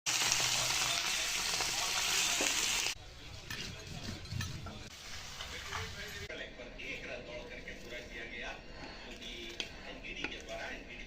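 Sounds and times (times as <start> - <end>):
food sizzling in hot oil: 0.1 - 3.0, 4.9 - 6.3.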